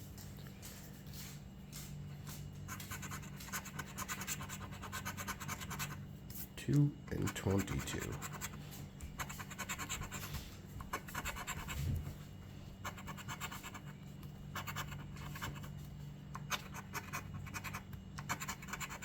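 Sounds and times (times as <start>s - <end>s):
coin scratching ticket: 2.7s - 6.0s, 7.1s - 8.6s, 16.4s - 19.0s.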